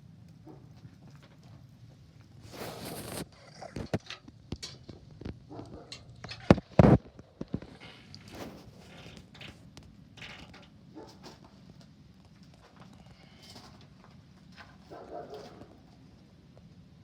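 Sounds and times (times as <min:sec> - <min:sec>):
short rustle: 0:02.4 - 0:03.6.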